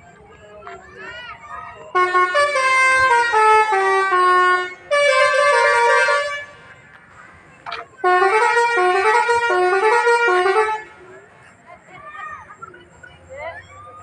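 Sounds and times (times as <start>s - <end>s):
bus multi-tone horn melody: 1.8s - 7.0s, 7.6s - 11.3s.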